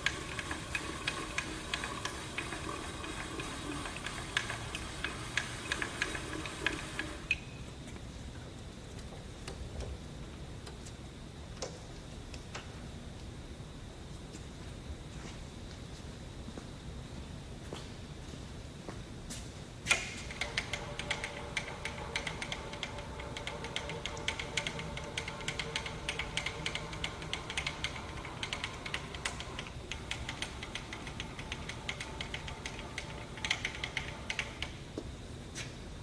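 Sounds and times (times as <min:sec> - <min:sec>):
rapid mechanical clicking: 0:00.0 - 0:07.4, 0:19.9 - 0:34.8
milling machine motor whine: 0:20.2 - 0:34.8.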